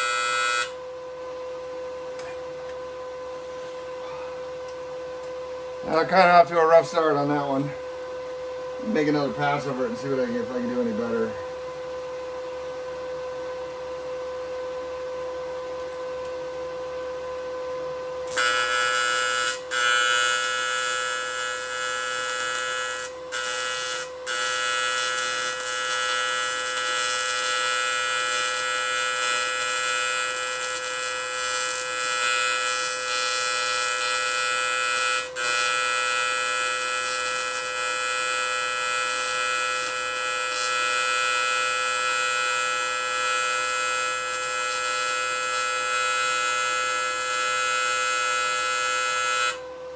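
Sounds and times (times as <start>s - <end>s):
welding arc buzzing: 0.0s - 0.8s, 5.2s - 7.8s, 18.3s - 49.6s
electrical hum: 0.0s - 49.9s.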